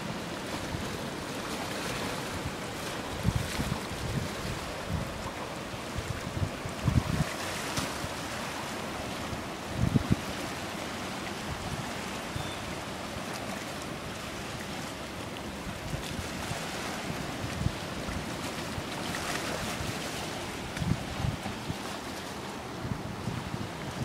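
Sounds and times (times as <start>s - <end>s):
waves and flowing water: 0.0s - 24.0s
wind buffeting microphone: 2.5s - 7.4s, 9.7s - 10.3s, 19.2s - 22.0s.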